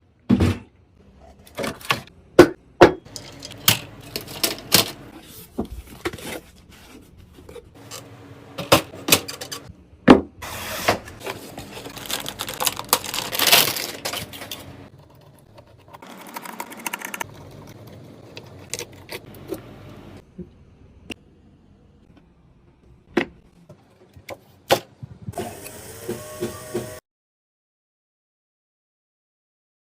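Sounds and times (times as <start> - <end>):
rustling and scraping: 3.1 - 8.2, 10.4 - 19.7.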